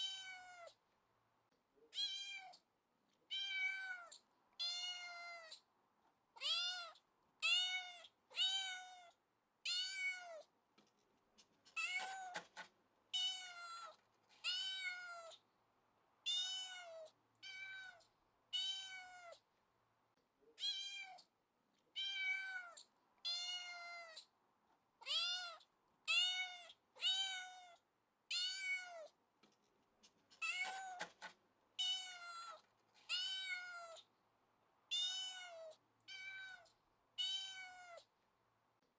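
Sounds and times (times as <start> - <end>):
cat meowing: 0.0 - 0.8, 1.9 - 2.6, 3.3 - 5.6, 6.4 - 10.5, 13.2 - 15.4, 16.3 - 19.4, 21.9 - 24.3, 25.0 - 29.1, 31.8 - 34.1, 34.9 - 38.1.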